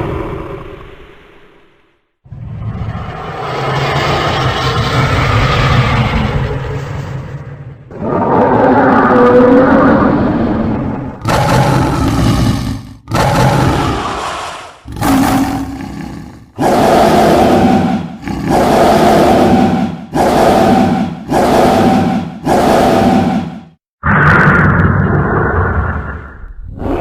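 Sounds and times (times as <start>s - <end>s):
dinosaur roars: 7.9s - 27.0s.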